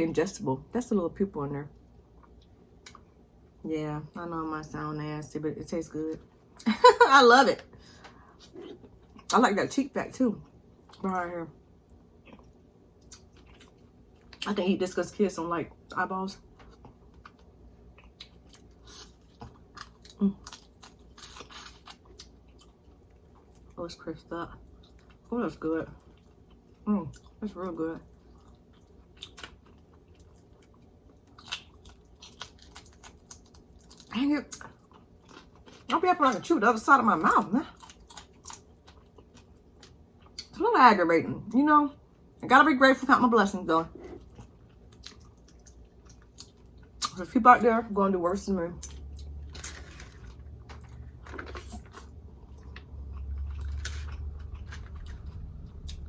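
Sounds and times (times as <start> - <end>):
low steady hum: 0.0 - 56.0
chewing crisp fish: 12.2 - 14.4, 16.6 - 23.8, 28.1 - 35.9, 48.8 - 56.0.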